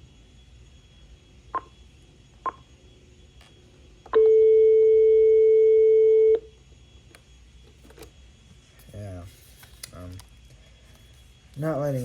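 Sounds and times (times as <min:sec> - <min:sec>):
cordless phone beep-tone: 0:04.2 - 0:06.4.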